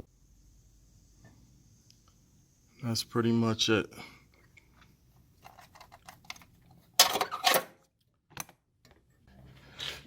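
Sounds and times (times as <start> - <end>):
tools clattering: 5.4 - 7.8.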